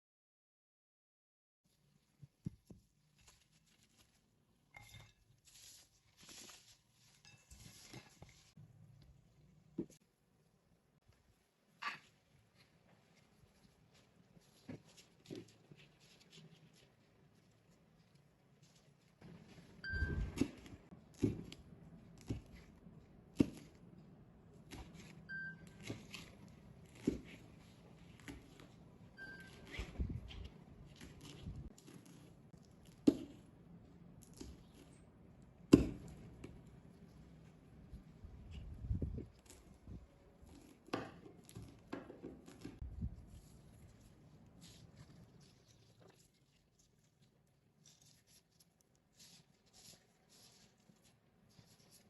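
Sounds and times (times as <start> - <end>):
soft rustling scrapes: 5.3 - 8.6.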